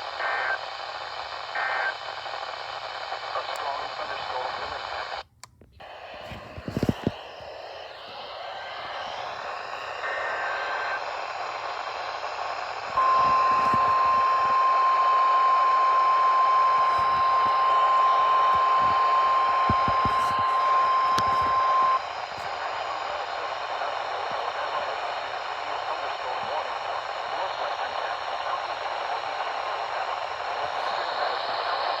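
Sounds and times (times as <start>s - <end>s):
static hiss: 0.0s - 32.0s
high data tone: 5.9s - 32.0s
radio warning alarm tone: 13.0s - 29.0s.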